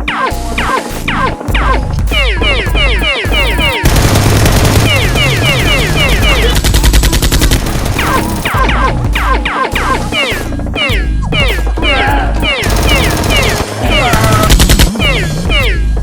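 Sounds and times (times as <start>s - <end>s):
background music: 0.0s - 16.0s
toy blaster gunfire effects: 2.4s - 8.6s, 12.4s - 15.7s.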